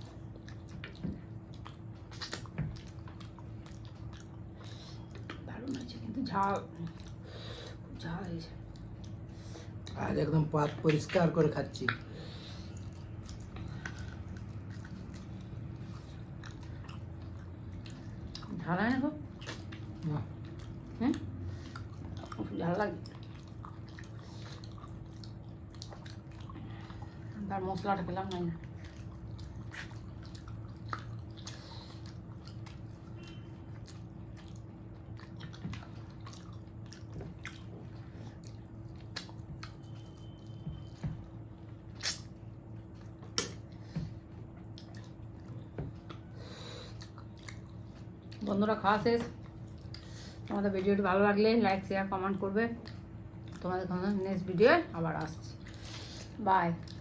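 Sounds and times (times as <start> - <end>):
person chewing food: 0.0 - 8.0, 11.9 - 18.6, 19.2 - 48.5, 49.4 - 50.5, 52.8 - 53.7
wet mouth clicks and smacks: 0.4 - 4.4, 19.3 - 20.8, 38.4 - 43.9
small mouth clicks: 42.0 - 42.4.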